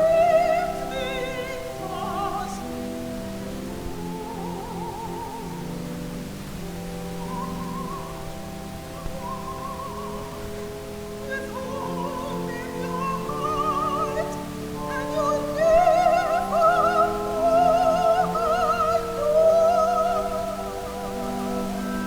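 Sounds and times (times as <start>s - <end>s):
person singing classically: 0.0s - 22.0s.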